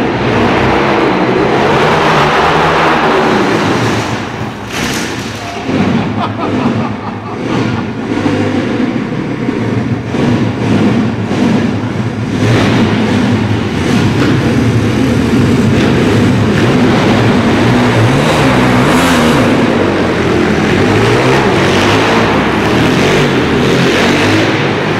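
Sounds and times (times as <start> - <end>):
pit bike engine revving: 0.0 - 24.9.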